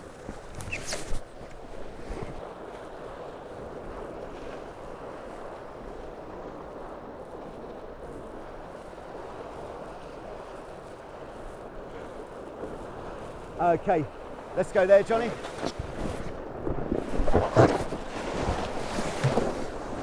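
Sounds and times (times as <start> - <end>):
water rushing past hull: 13.4 - 20.0.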